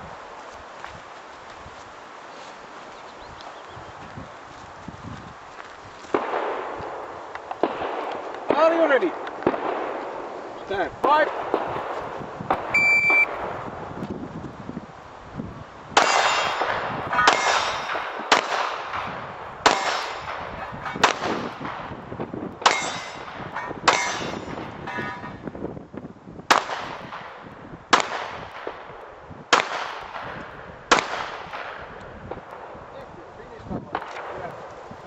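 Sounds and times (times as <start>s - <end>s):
pistol shots with echo: 6.1s - 7.0s, 7.6s - 10.3s, 16.0s - 21.9s, 22.6s - 24.7s, 26.5s - 28.9s, 29.5s - 31.9s
metallic ring of steel targets: 22.6s - 25.4s.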